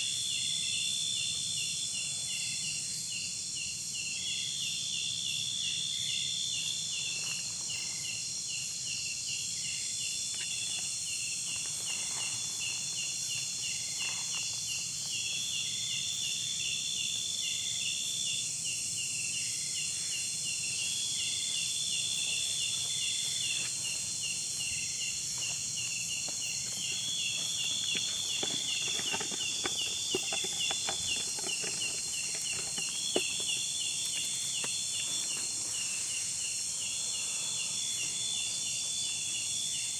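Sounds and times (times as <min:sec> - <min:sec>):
high buzzing insect call: 0:00.0 - 0:39.9
insects trilling: 0:00.0 - 0:39.9
faint ticks and rustles: 0:10.2 - 0:15.6, 0:25.2 - 0:35.8.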